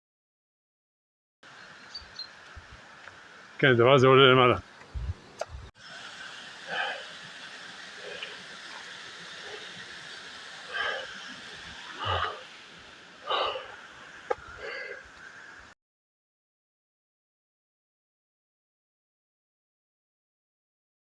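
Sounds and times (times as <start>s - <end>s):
faint steady hiss: 1.4s - 15.8s
runner breathing hard: 6.6s - 12.6s, 13.2s - 15.5s.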